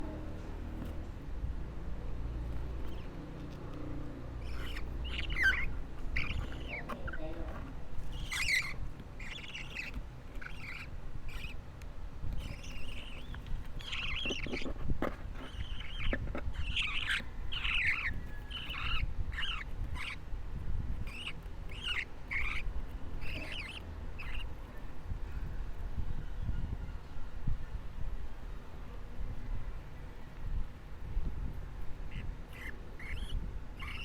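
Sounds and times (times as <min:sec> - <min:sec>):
baby budgerigar chirping: 0:01.7 - 0:27.4, 0:31.6 - 0:34.0.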